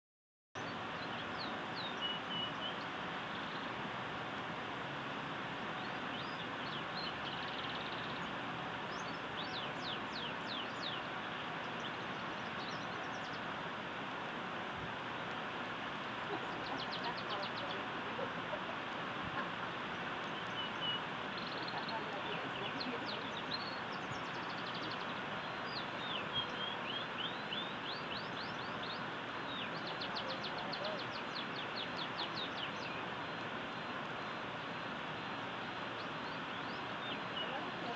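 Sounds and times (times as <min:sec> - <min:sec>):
canary singing: 0:00.6 - 0:03.8, 0:05.7 - 0:13.6, 0:16.3 - 0:37.9
steady hiss: 0:00.6 - 0:37.9.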